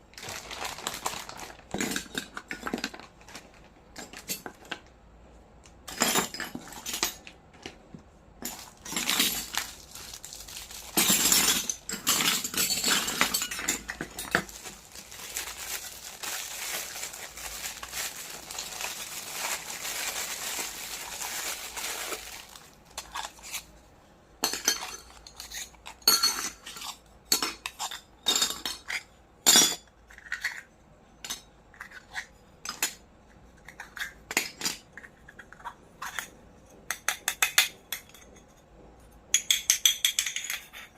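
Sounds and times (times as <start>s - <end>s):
toy kitchenware clinking: 10.5s - 18.1s.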